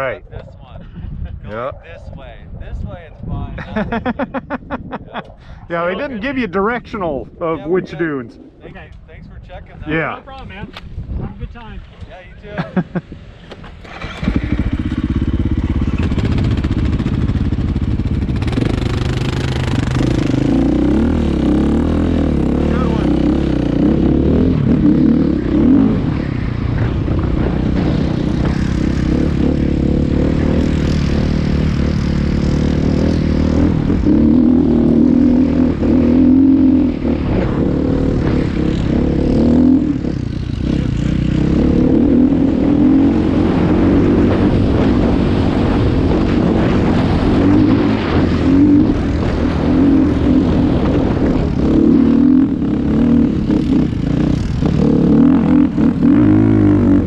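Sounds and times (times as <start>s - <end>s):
off-road vehicle engine running: 12.9s - 57.0s.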